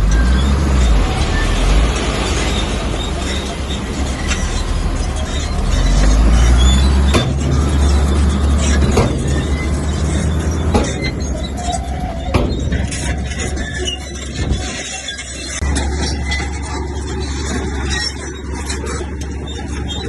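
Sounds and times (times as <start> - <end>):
bulldozer engine running: 0.0 - 20.0
sharp metallic knocks: 4.0 - 19.9.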